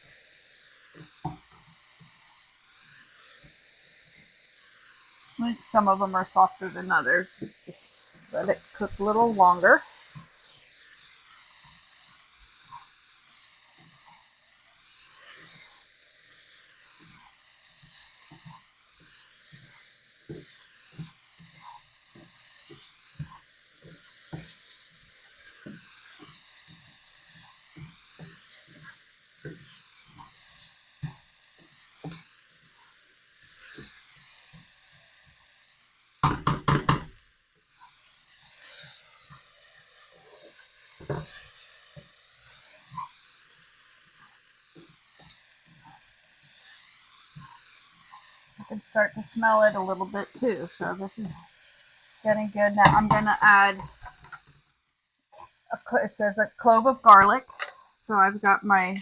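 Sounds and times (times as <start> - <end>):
vegetables sizzling in oil: 0.0 - 59.0
rapid knocking: 36.2 - 37.1.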